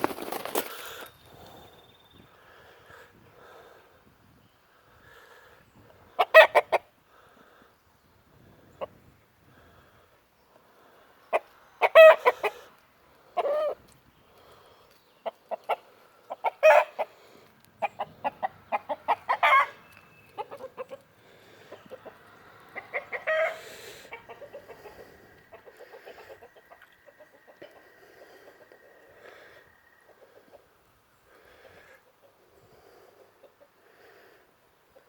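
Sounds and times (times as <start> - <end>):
rooster clucking and squawking: 6.1 - 6.9, 11.3 - 12.7, 13.4 - 13.8, 15.2 - 17.2, 17.8 - 29.0.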